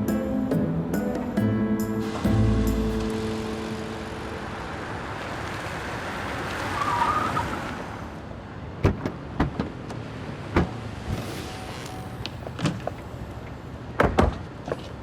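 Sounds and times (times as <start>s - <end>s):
car driving by: 2.0s - 8.3s.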